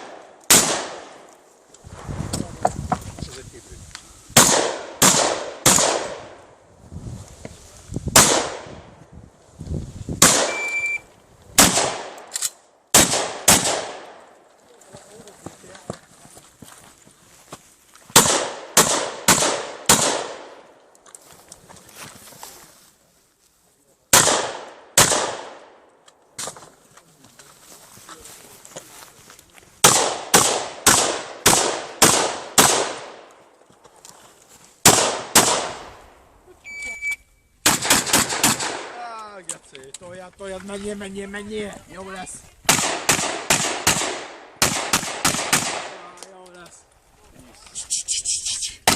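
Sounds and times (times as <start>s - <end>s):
shotgun shots echoing: 0.0s - 1.3s, 4.4s - 6.4s, 8.1s - 8.7s, 10.2s - 10.8s, 11.6s - 14.2s, 18.2s - 20.7s, 24.1s - 25.8s, 29.8s - 33.3s, 34.8s - 36.0s, 37.6s - 39.0s, 42.7s - 46.2s.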